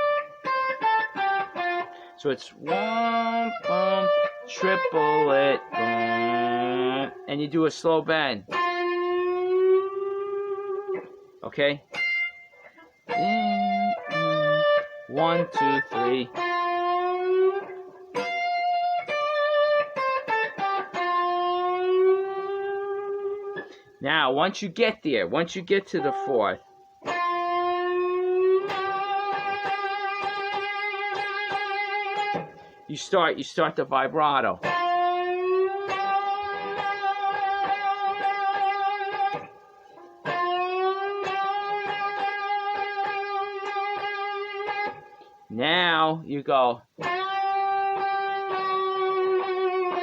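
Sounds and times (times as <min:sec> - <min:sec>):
blues guitar lick: 0:00.0 - 0:50.0
bent guitar note picked rapidly: 0:13.1 - 0:23.0.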